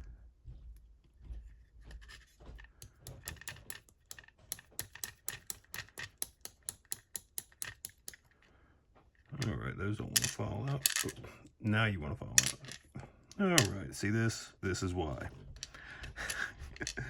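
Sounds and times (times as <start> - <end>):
small metal lock parts clicking: 2.8 - 8.4.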